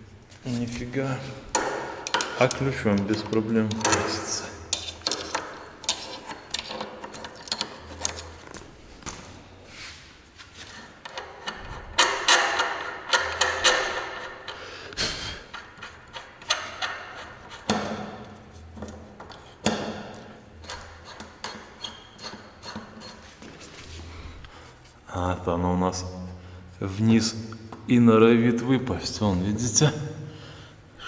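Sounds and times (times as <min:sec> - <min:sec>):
metal parts clinking and scraping: 0:01.5 - 0:08.6.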